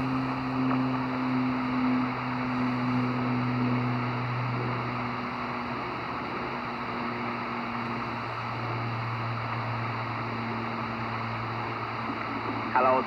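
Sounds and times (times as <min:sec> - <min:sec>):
low humming tones: 0:00.0 - 0:13.0
radio static hiss: 0:09.3 - 0:13.0.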